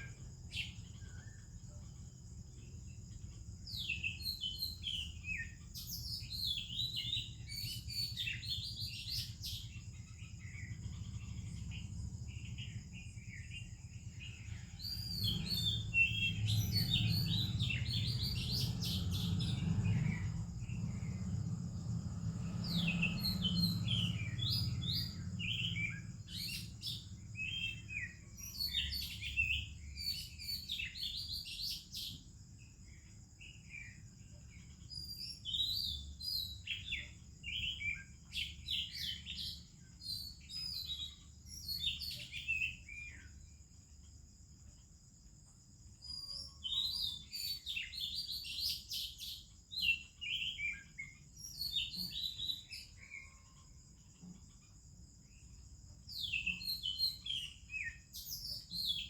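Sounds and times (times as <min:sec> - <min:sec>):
steady high-pitched hiss: 0:00.0 - 0:59.0
bird singing whistled phrases: 0:49.8 - 0:53.4.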